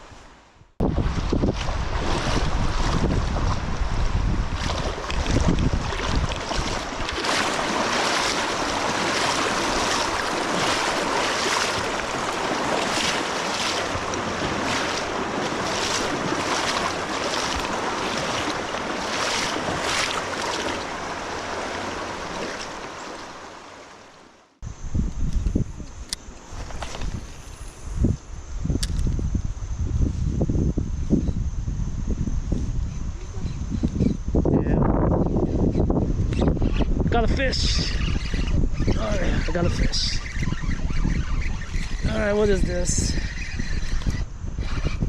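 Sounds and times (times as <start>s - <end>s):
wind buffeting microphone: 0.0s - 23.4s, 24.6s - 45.0s
river water rushing and splashing: 1.1s - 24.6s.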